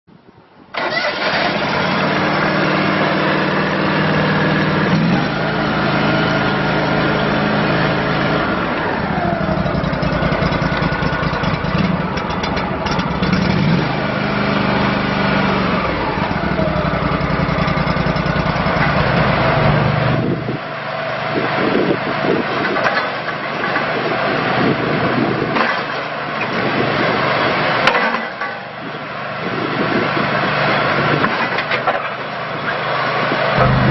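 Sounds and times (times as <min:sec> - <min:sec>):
small engine running: 0:01.0 - 0:20.4, 0:33.6 - 0:33.9.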